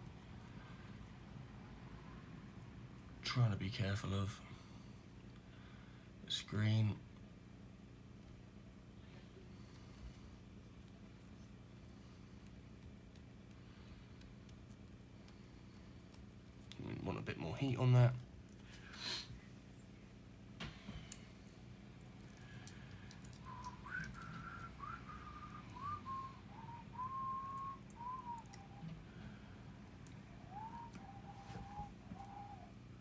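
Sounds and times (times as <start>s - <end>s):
faint low hum: 0.0s - 33.0s
person whistling: 23.4s - 29.0s, 30.4s - 32.8s.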